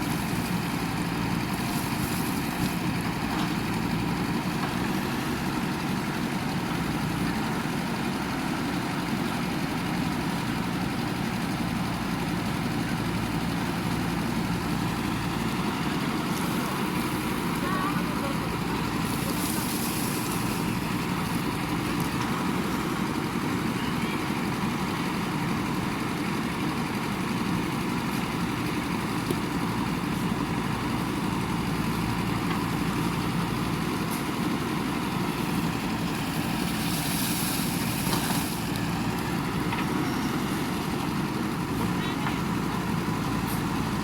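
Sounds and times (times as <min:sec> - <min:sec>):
diesel engine running: 0:00.0 - 0:44.0.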